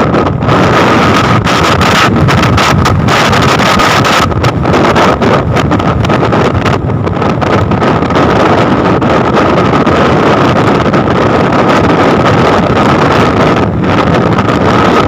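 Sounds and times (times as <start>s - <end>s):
high whine: 0.0s - 15.0s
wind buffeting microphone: 0.0s - 15.0s.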